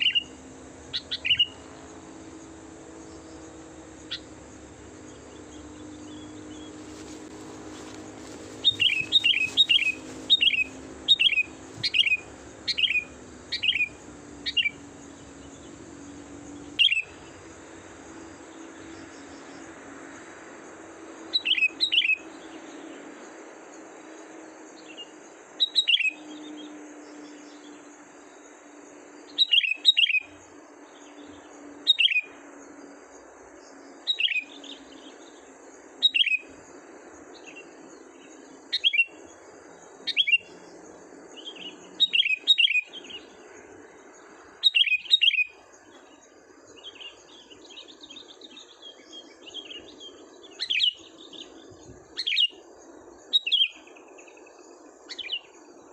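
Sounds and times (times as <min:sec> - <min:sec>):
decoy bird chirping: 0:00.0 - 0:01.7, 0:03.0 - 0:04.4, 0:05.0 - 0:17.4, 0:21.3 - 0:22.4, 0:24.9 - 0:26.7, 0:29.3 - 0:32.4, 0:34.0 - 0:35.4, 0:36.0 - 0:36.6, 0:37.4 - 0:39.3, 0:40.0 - 0:40.6, 0:41.4 - 0:43.5, 0:44.5 - 0:55.6.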